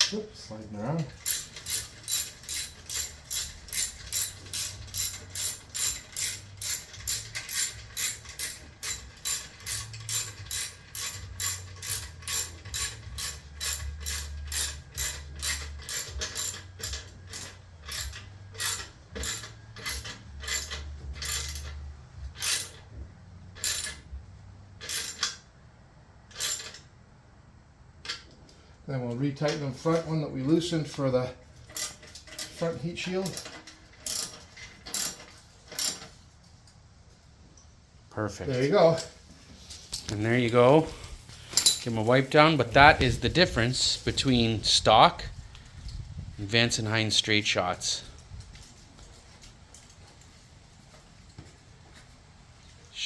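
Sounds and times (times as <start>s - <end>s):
hand ratchet clicking: 1.0s - 22.9s, 23.6s - 24.0s, 24.8s - 25.4s, 26.3s - 26.9s, 31.6s - 36.2s.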